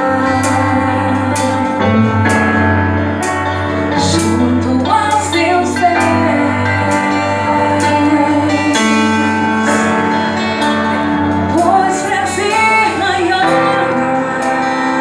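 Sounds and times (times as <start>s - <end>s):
gospel band sustained chords: 0.0s - 15.0s.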